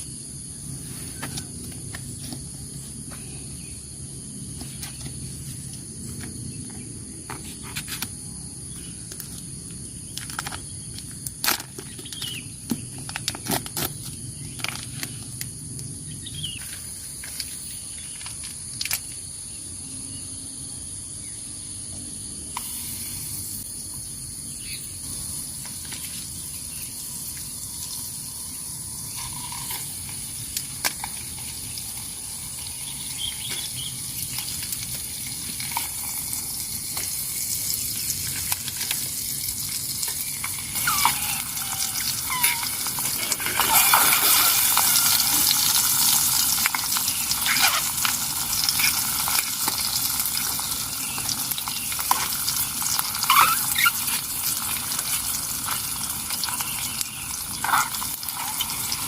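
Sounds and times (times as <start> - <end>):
high-pitched insect drone: 39.1 - 45.8
bird chirps: 40.8 - 42.7, 53.3 - 54.0.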